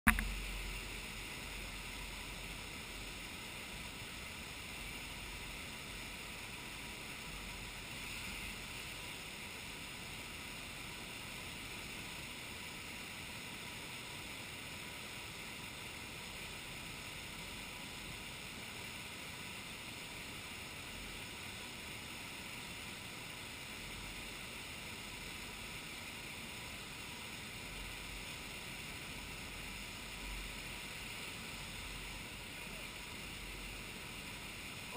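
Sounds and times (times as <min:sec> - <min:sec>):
rushing water: 0:00.1 - 0:34.9.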